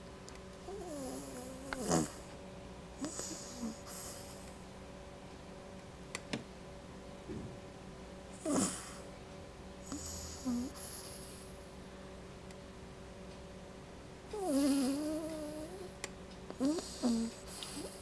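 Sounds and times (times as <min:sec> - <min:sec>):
dog snoring: 0:00.7 - 0:02.3, 0:03.0 - 0:04.5, 0:08.4 - 0:09.1, 0:09.8 - 0:11.6, 0:14.3 - 0:16.0, 0:16.6 - 0:18.0
dog snorting: 0:00.7 - 0:02.3, 0:03.0 - 0:04.5, 0:08.4 - 0:09.0, 0:09.9 - 0:11.5, 0:14.3 - 0:15.9, 0:16.6 - 0:18.0.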